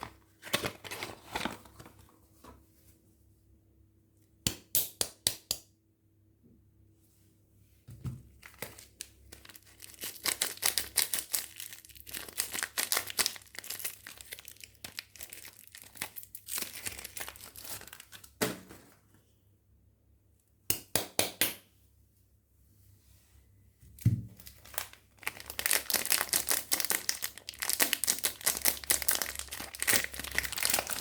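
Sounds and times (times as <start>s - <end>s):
soap wrapper crinkling and tearing: 8.4s - 18.4s, 24.4s - 31.0s.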